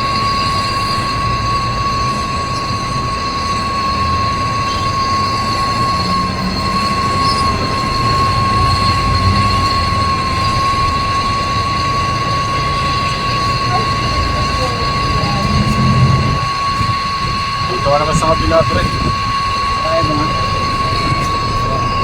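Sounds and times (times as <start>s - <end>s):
machine running with whine: 0.0s - 22.0s
low rumble: 12.6s - 22.0s.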